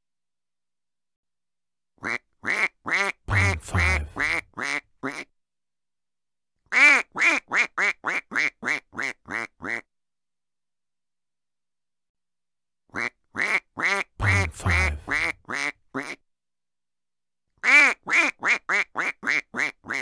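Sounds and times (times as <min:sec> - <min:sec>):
duck quacking: 0:02.0 - 0:05.3, 0:06.7 - 0:09.9, 0:12.9 - 0:16.2, 0:17.6 - 0:20.0.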